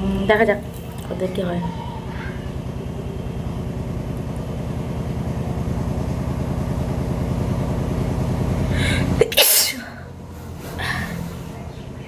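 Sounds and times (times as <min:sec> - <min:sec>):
engine rumble: 0:00.0 - 0:12.0.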